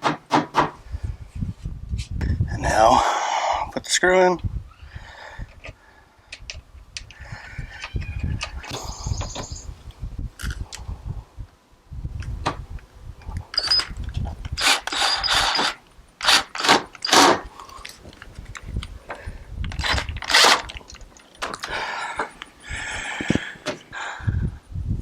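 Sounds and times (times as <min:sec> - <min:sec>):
hand tool driving a screw: 0:13.5 - 0:18.9, 0:19.7 - 0:22.5.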